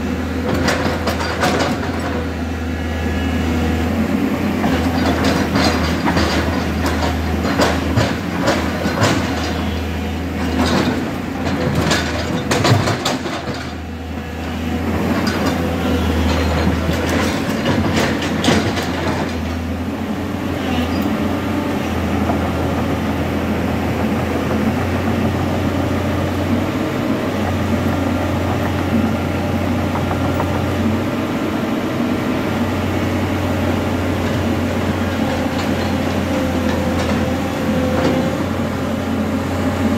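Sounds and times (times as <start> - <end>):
diesel engine droning: 0.0 - 39.9
machine knocks and rattles: 0.4 - 2.2, 4.6 - 9.7, 10.4 - 13.8, 15.1 - 19.6.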